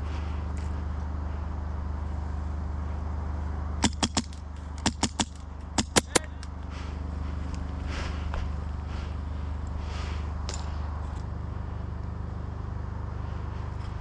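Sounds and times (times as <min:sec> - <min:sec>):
airsoft rifle shots: 0:03.8 - 0:06.3.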